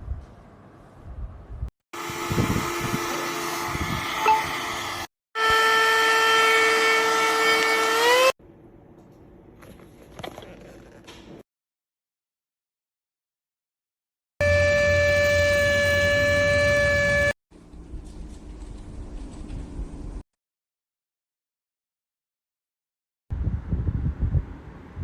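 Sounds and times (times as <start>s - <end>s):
vacuum cleaner motor whine: 2.0s - 8.3s, 14.4s - 17.3s.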